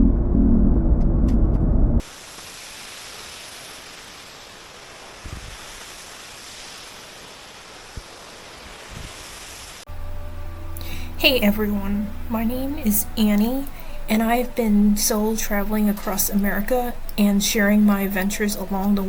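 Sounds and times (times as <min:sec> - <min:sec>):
faint low bumps: 0:00.0 - 0:02.0
wind hiss: 0:02.0 - 0:19.0
music: 0:09.9 - 0:19.0.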